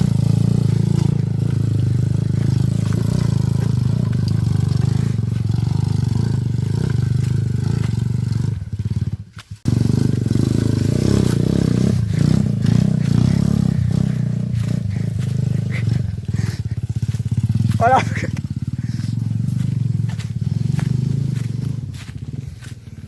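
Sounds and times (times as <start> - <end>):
motorcycle engine running: 0.0 - 23.0
bike clattering: 0.2 - 10.3.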